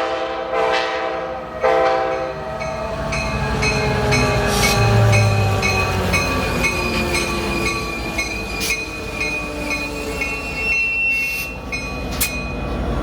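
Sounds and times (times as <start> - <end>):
rail and wheel noise: 0.0 - 13.0
high thin wheel squeal: 4.2 - 12.5.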